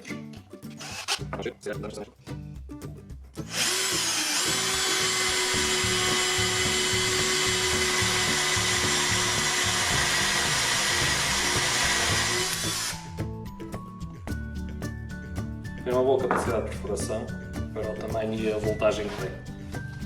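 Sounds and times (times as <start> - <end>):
background music with steady beat: 0.0 - 20.0
cordless drill motor whine: 0.8 - 1.2, 3.5 - 13.2.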